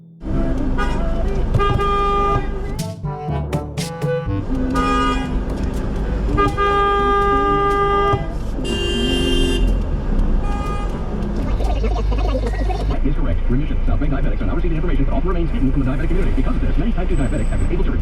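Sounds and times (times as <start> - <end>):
traffic rumble: 0.0 - 18.0
car horns honking: 0.2 - 11.2.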